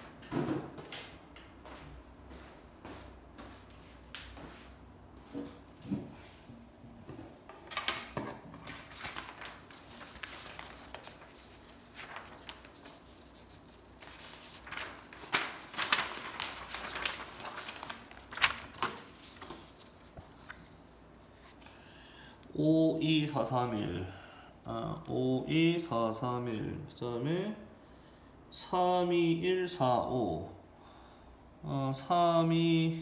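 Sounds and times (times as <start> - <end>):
paper rustling: 7.7 - 21.6.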